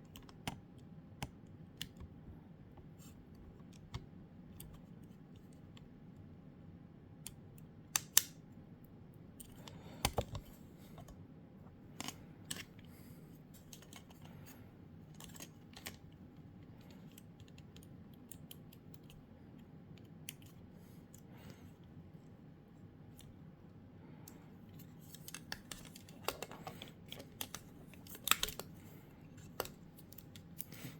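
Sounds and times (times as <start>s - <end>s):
plastic controller parts clicking: 0.1s - 2.2s, 8.0s - 8.4s, 9.4s - 11.2s, 11.9s - 12.9s, 13.6s - 14.6s, 15.2s - 19.2s, 24.8s - 30.9s.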